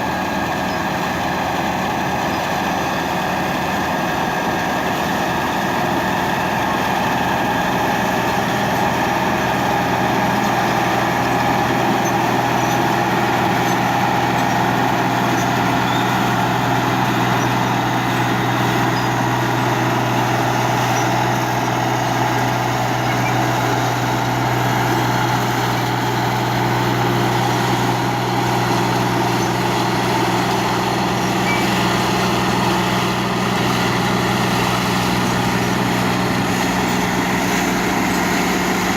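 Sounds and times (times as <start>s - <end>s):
combine harvester engine drone: 0.0s - 38.9s.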